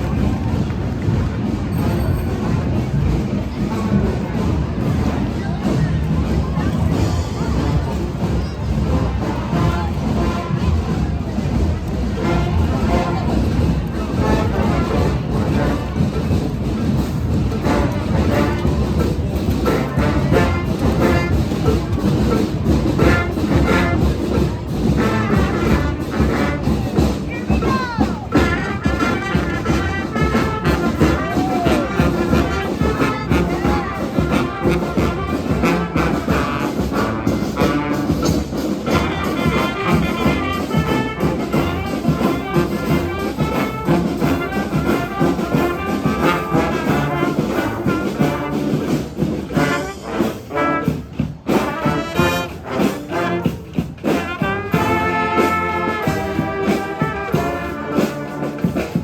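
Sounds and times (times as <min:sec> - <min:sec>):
street brass band playing: 0:00.0 - 0:59.0.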